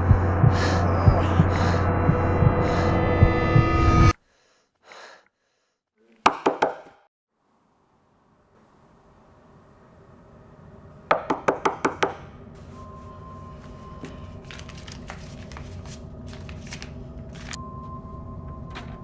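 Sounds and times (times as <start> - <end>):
low rumble: 0.0 - 4.1.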